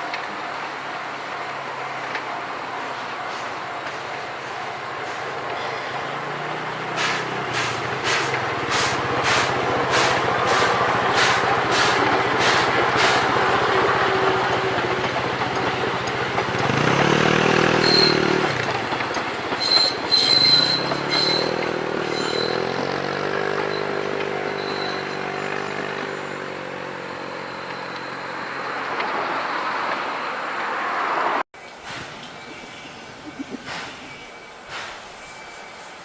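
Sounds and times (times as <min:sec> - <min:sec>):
rail clicks: 0:00.0 - 0:26.4, 0:33.3 - 0:35.6
train wheels rolling: 0:00.0 - 0:26.6, 0:33.2 - 0:36.0
high wheel squeals: 0:16.6 - 0:18.7, 0:19.5 - 0:29.6.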